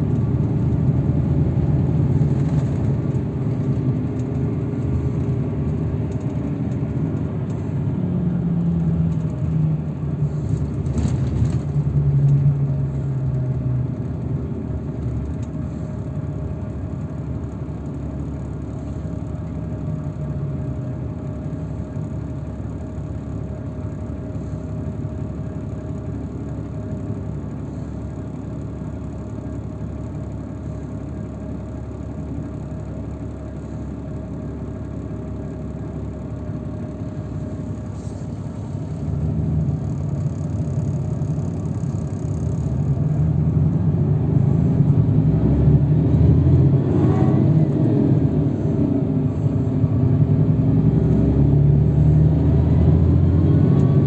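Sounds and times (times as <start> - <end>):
vehicle engine and road rumble: 0.0 - 54.0.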